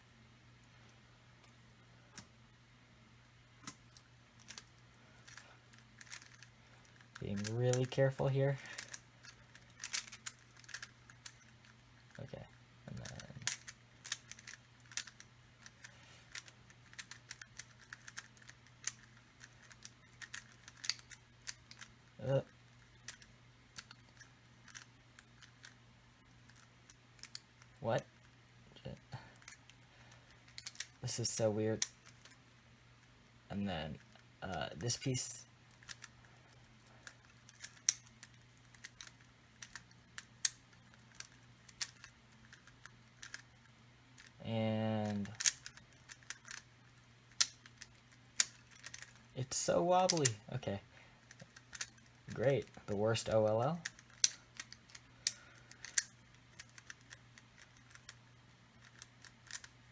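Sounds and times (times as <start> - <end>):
plastic puzzle cube clicking: 3.6 - 7.9, 8.7 - 11.7, 13.0 - 21.9, 22.7 - 25.8, 26.5 - 28.3, 30.5 - 31.0, 35.7 - 36.1, 37.0 - 43.5, 45.0 - 46.7, 47.3 - 49.2, 50.1 - 50.4, 51.3 - 52.4, 53.7 - 58.2, 58.8 - 59.9.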